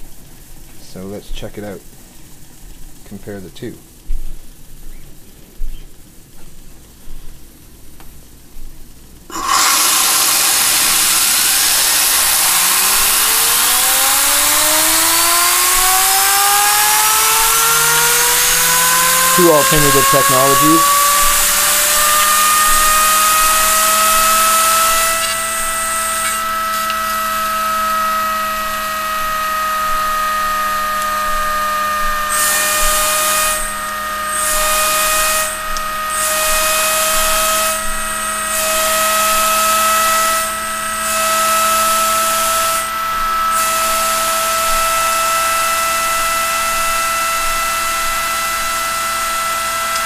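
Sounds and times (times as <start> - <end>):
turbine high whine: 0.0 - 50.0
steam hissing: 9.3 - 48.4.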